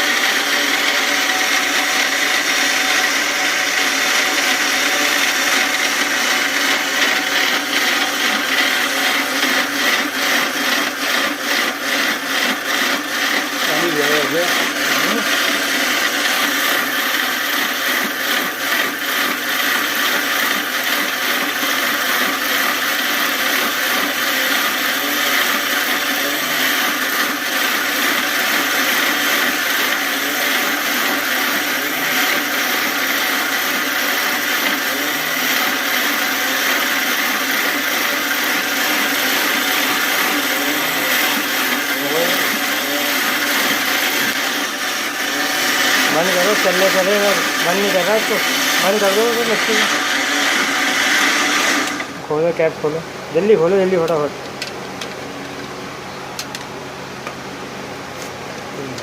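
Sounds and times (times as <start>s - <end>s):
mixer grinder whirring: 0.0s - 59.0s.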